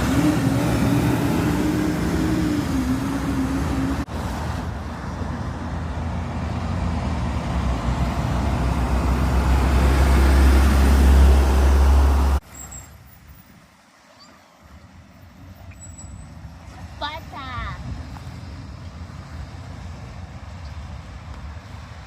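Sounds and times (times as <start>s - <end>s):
diesel truck engine: 0.0s - 22.0s.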